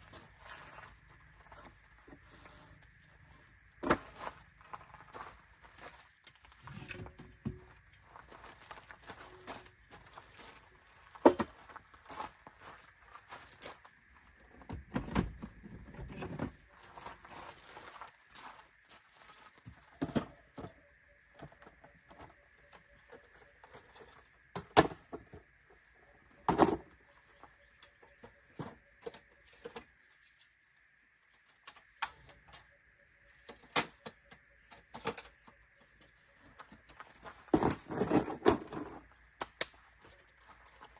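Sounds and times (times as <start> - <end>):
insects droning: 0.0 - 40.9.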